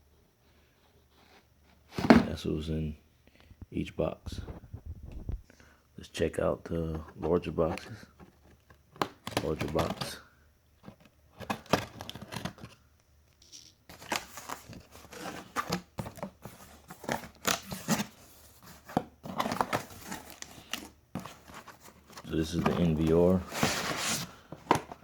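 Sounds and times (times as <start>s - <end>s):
cardboard packaging rustling: 7.0s - 10.2s, 10.8s - 12.8s, 13.5s - 25.0s.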